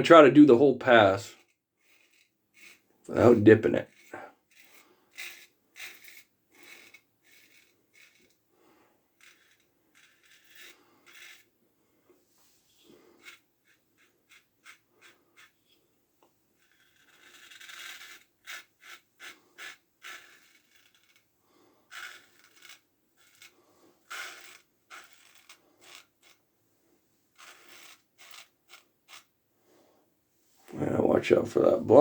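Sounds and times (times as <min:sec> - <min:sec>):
razor scraping stubble: 0:00.2 - 0:08.4, 0:12.9 - 0:15.6, 0:16.6 - 0:26.4, 0:27.3 - 0:29.3.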